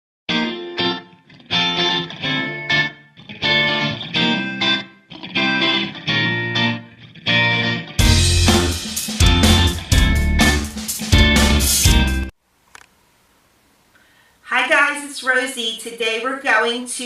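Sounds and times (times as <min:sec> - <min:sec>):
plucked guitar music: 0:00.3 - 0:12.3
band with drums: 0:08.0 - 0:12.3.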